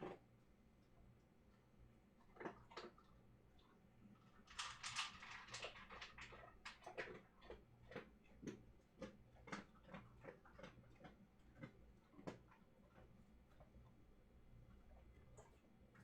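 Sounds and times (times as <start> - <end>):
dog chewing dry kibble: 2.3 - 14.0.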